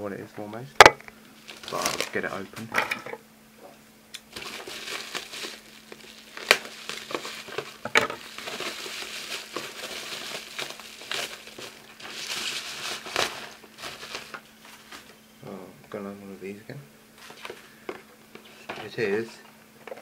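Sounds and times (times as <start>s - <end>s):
packaging crinkling and rustling: 1.4s - 2.7s, 4.3s - 15.2s, 17.2s - 19.4s.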